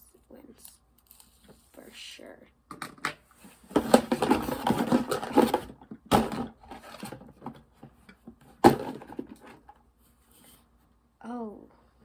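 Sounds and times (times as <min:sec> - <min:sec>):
plastic toys scraping and clattering: 0:02.9 - 0:09.8.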